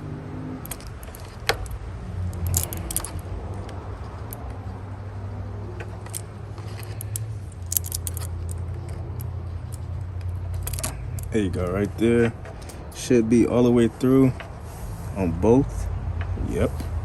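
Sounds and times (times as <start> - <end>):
metallic clicks of pliers: 0.6 - 4.5.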